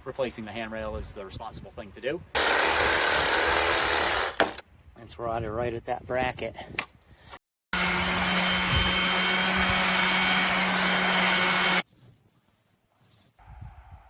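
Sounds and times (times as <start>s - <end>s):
electric drill running: 2.4s - 4.6s, 7.8s - 11.8s.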